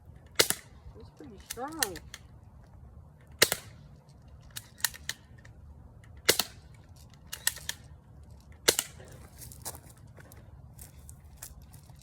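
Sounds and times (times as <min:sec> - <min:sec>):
bb gun firing crack: 0:00.4 - 0:00.8, 0:03.4 - 0:03.8, 0:06.2 - 0:06.7, 0:08.6 - 0:09.1.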